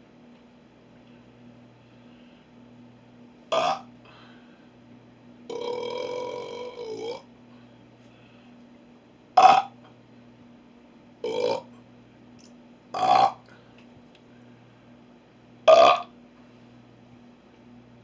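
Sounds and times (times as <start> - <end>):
man burping: 3.5 - 3.9, 5.5 - 7.3, 9.4 - 9.8, 11.2 - 11.7, 13.0 - 13.5, 15.7 - 16.1.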